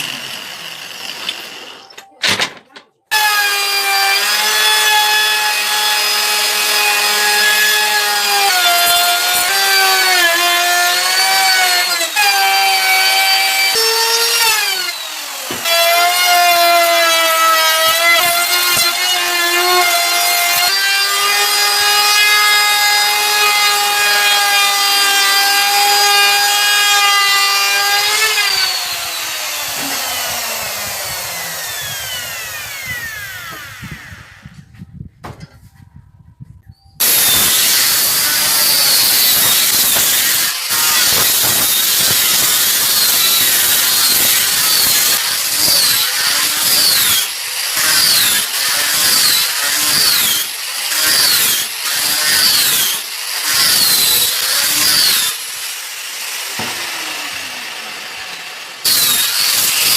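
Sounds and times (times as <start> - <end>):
electric saw cutting wood: 0.0 - 2.0, 3.1 - 34.6, 37.0 - 59.9.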